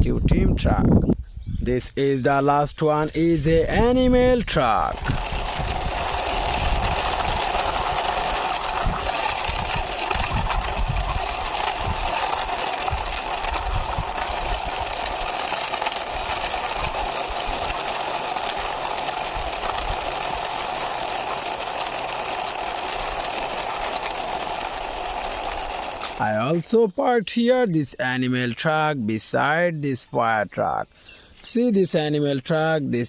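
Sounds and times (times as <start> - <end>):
toy truck wheels whirring: 3.2 - 26.8.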